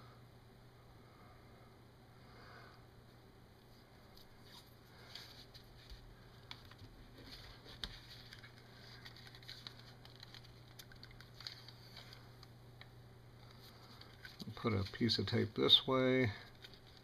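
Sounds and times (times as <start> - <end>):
low steady hum: 0.0 - 17.0
tape handling clicks and crinkles: 4.1 - 17.0.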